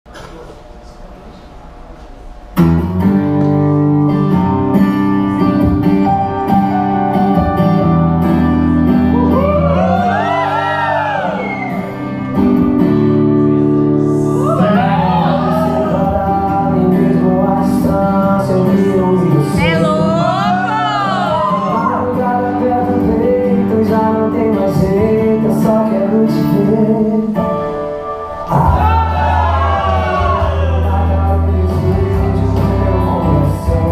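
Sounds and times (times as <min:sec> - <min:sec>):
guitar accompaniment: 0:02.1 - 0:33.9
person singing: 0:14.0 - 0:27.6, 0:28.4 - 0:33.9.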